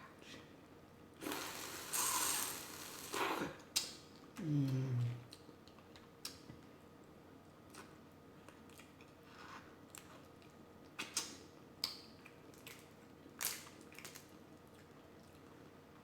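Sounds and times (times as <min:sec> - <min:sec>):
food being chewed: 0:07.7 - 0:15.8.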